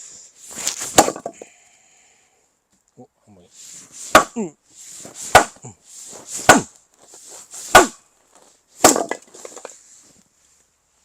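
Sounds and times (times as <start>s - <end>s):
axe splitting firewood: 0.6s - 1.4s, 4.0s - 9.8s.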